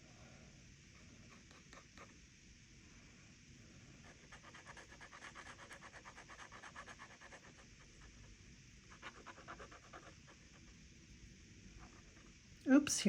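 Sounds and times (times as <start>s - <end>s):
pen nib scratching on paper: 1.2s - 2.2s, 4.0s - 7.7s, 9.0s - 10.5s.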